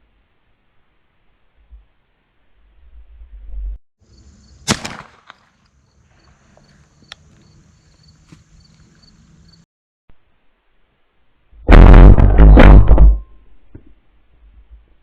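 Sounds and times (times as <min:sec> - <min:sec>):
shotgun shot: 0:04.6 - 0:05.5.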